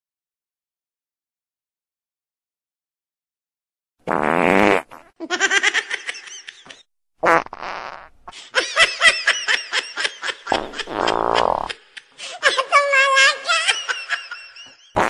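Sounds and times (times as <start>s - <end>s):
fart noises: 4.0s - 5.2s, 7.2s - 8.2s, 10.5s - 11.7s.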